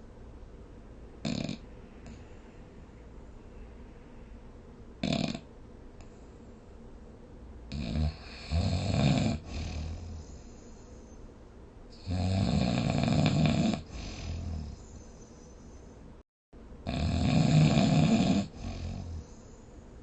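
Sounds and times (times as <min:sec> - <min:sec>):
long rattling snores: 0:01.2 - 0:01.6, 0:05.0 - 0:05.5, 0:07.7 - 0:10.2, 0:12.0 - 0:14.8, 0:16.8 - 0:19.4.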